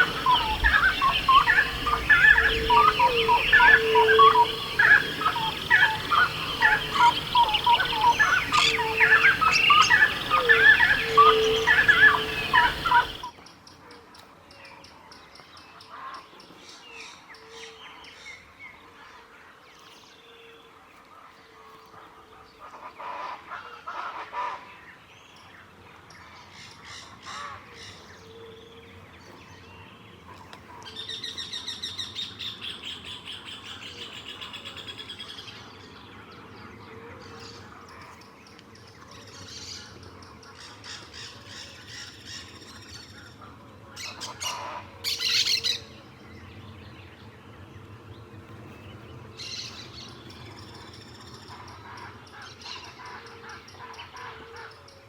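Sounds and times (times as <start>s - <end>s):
bird high repeated notes: 0.0s - 13.3s
birds chirping: 0.0s - 13.3s
wild birds calling: 0.0s - 13.4s, 39.2s - 55.0s.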